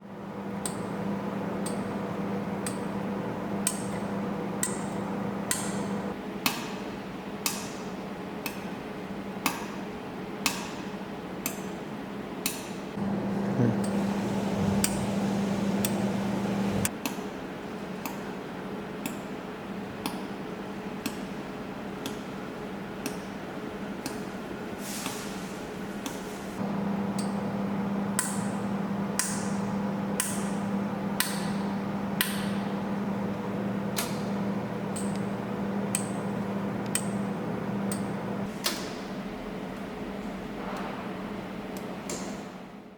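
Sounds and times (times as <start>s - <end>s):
machine humming: 0.0s - 6.2s, 13.0s - 16.9s, 26.6s - 38.5s.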